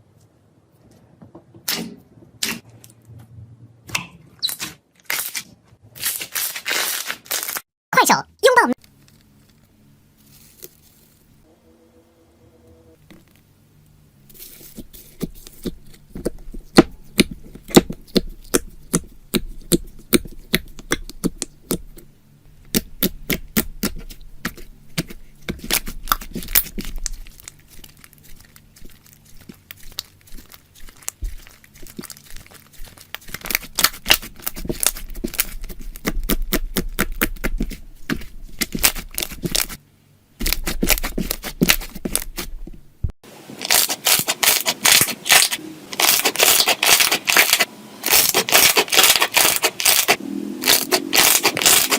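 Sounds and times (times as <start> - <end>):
slime crackling and popping: 22.7 - 39.8, 40.4 - 42.6, 43.6 - 51.9.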